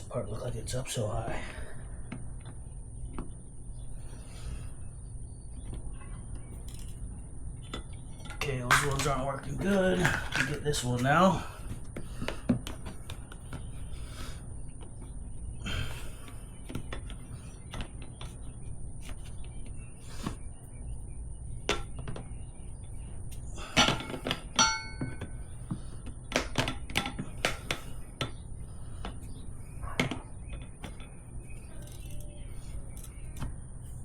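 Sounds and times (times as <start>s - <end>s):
tire levers clinking on wheel rim: 5.6s - 13.8s, 14.7s - 34.0s
metallic ring: 24.6s - 25.2s.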